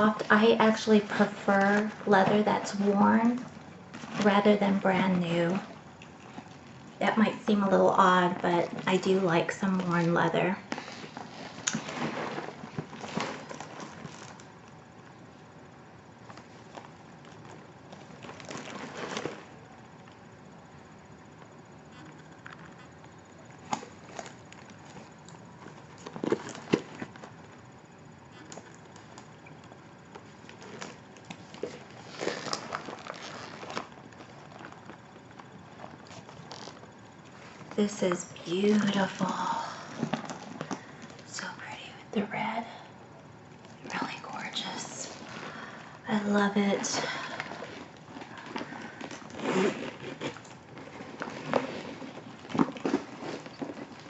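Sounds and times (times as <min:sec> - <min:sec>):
handbag rustle: 0:10.7 - 0:14.4, 0:16.3 - 0:19.6, 0:30.3 - 0:41.3, 0:47.0 - 0:54.0.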